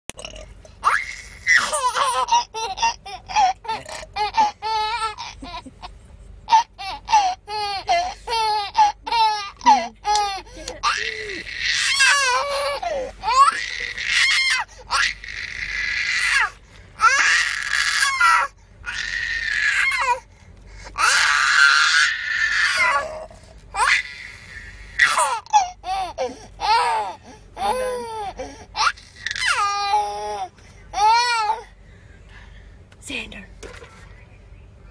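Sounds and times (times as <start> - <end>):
baby squealing: 0.8 - 5.4, 6.5 - 20.2, 21.0 - 28.1, 28.8 - 30.4
baby laughing: 0.8 - 15.5.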